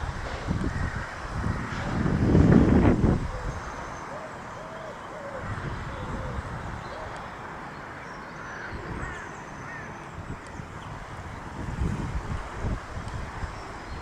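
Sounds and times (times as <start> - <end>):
wind rumbling on microphone: 0.0 - 7.8, 8.5 - 14.0
birds calling: 0.5 - 11.6.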